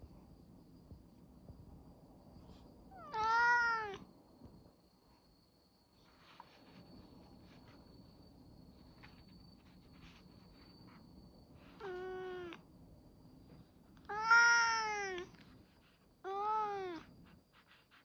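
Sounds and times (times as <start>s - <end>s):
cat meowing: 3.0s - 4.0s, 11.8s - 12.6s, 14.1s - 15.3s, 16.3s - 17.0s.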